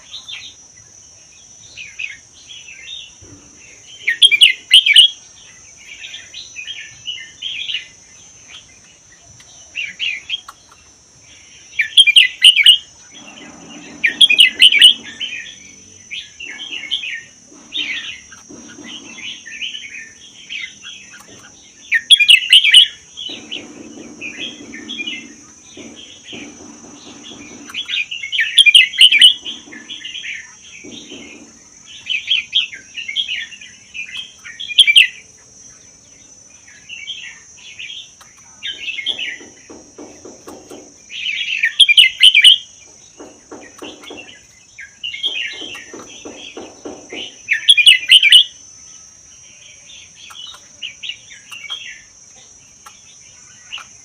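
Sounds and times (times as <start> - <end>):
steady high-pitched hiss: 0.0 - 54.0
bird chattering whistled song: 1.7 - 9.1, 11.6 - 35.8, 36.6 - 54.0.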